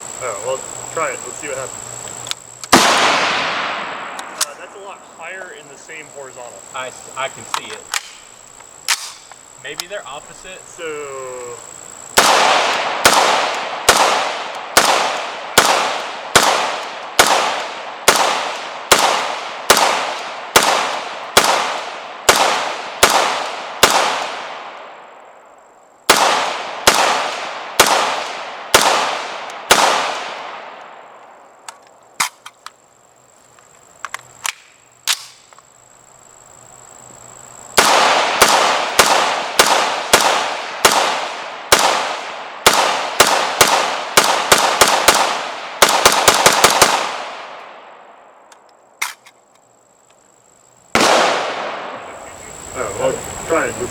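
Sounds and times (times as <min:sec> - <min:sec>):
rifle shots with ringing echo: 0:02.7 - 0:04.7, 0:07.5 - 0:09.4, 0:12.1 - 0:25.2, 0:26.1 - 0:31.4, 0:32.2 - 0:32.6, 0:34.4 - 0:35.5, 0:37.7 - 0:48.2, 0:50.9 - 0:52.2.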